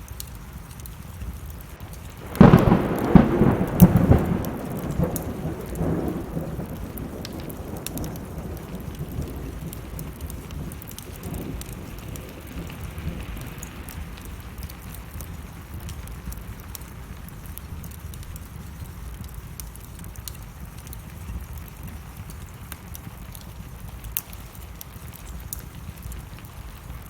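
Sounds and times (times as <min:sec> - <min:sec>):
steady rain: 0:00.0 - 0:27.0
wood fire crackling: 0:00.0 - 0:27.0
thunderclap rumbling: 0:01.7 - 0:17.2.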